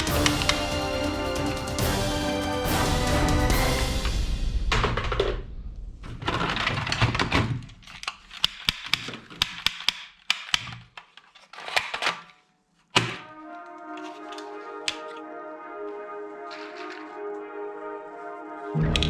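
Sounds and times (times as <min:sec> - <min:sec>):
background music with held chords: 0:00.0 - 0:04.6, 0:13.3 - 0:19.0
sharp clicks and knocks: 0:06.0 - 0:12.3
rustling handling noise: 0:06.1 - 0:15.2, 0:16.4 - 0:17.3.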